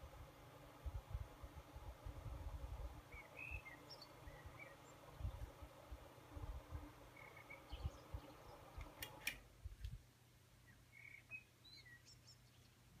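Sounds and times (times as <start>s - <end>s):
desk fan motor hum: 0.0s - 9.6s
faint bird chirps: 3.1s - 5.5s, 7.1s - 8.9s, 10.6s - 13.0s
fan switch clicks: 8.8s - 10.0s.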